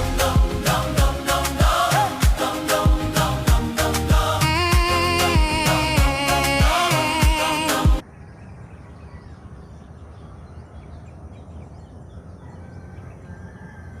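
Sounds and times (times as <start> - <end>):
gospel song with singing: 0.0 - 8.0
outdoor ambient noise: 0.0 - 14.0
faint bird chirps: 8.0 - 14.0.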